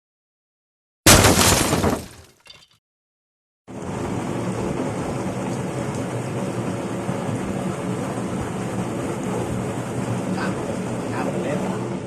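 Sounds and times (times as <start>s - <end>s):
loud crashing burst: 1.1s - 2.2s
washing machine running: 3.7s - 12.0s.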